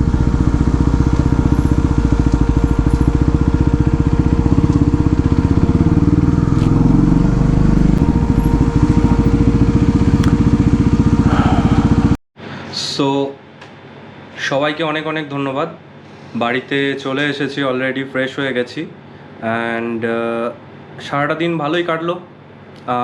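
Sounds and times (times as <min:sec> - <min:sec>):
motorcycle engine running: 0:00.0 - 0:12.2.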